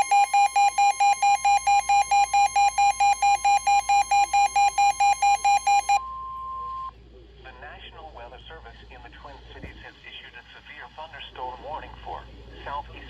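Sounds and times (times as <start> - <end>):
rapid alert beeping: 0.0 - 6.0
steady high alert tone: 0.0 - 6.0.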